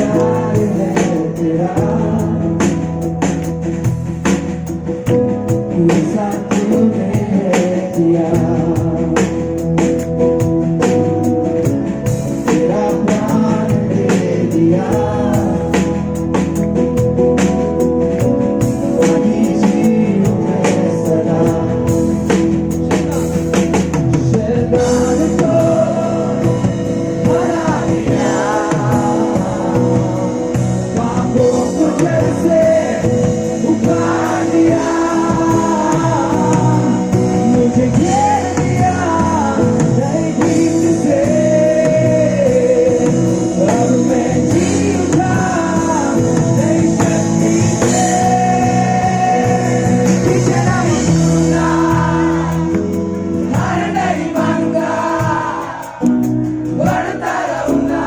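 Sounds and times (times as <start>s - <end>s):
live band worship song: 0.0s - 58.0s.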